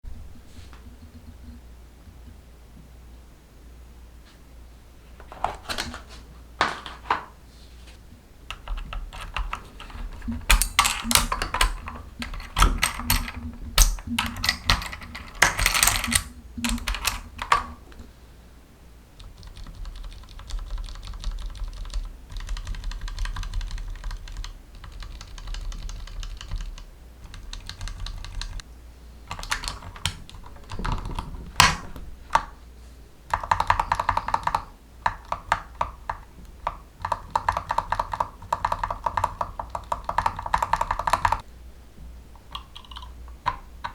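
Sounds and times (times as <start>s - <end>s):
mechanical keyboard typing: 8.5s - 18.1s, 19.2s - 28.6s, 29.3s - 32.5s, 33.3s - 41.4s.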